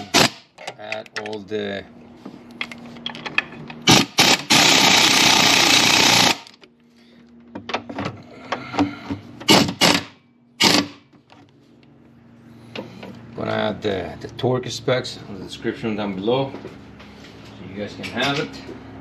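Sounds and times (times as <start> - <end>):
clicks and knocks of tools: 0.6 - 1.4
impact wrench hammering: 9.4 - 11.1.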